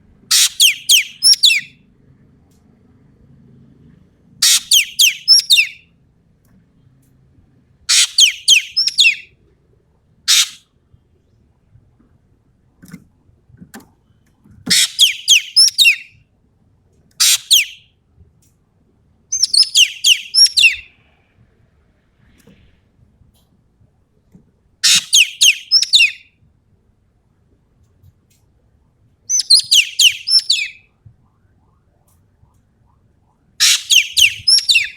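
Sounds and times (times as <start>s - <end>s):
bird whistling rapid falling notes: 29.3s - 30.8s, 33.6s - 34.9s.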